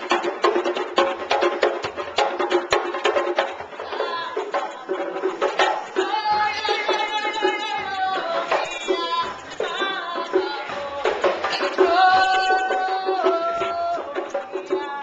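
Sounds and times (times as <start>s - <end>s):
steady drum beat: 0.0s - 15.0s.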